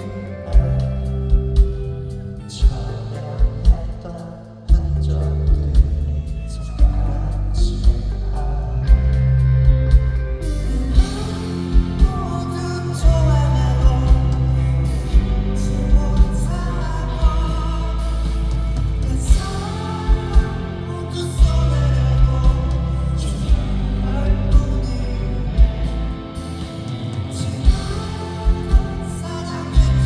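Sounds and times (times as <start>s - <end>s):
bass line: 0.0s - 30.0s
drum kit: 0.0s - 30.0s
guitars: 0.0s - 30.0s
person singing: 0.0s - 30.0s.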